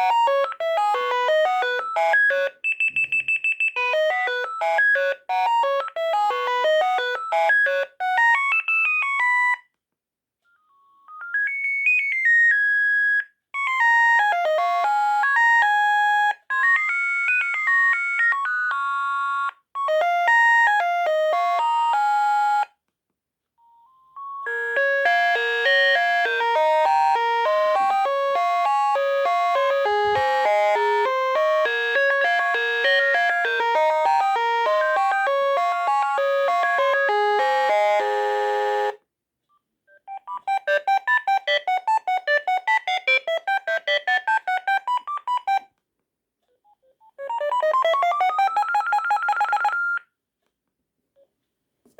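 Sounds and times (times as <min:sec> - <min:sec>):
mobile phone ringtone beeps: 0:23.7 - 0:39.0, 0:47.0 - 0:50.0.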